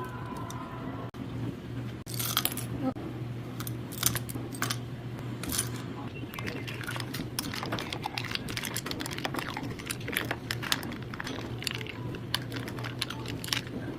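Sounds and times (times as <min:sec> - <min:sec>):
steady low hum: 0:00.0 - 0:13.9
utensils clinking against dishes: 0:03.6 - 0:05.8, 0:06.4 - 0:13.9.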